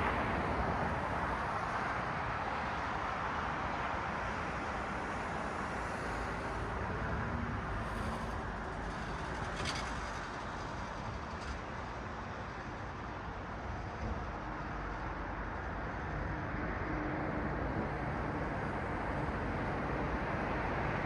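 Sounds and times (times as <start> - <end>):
road traffic hiss: 4.7 - 13.2.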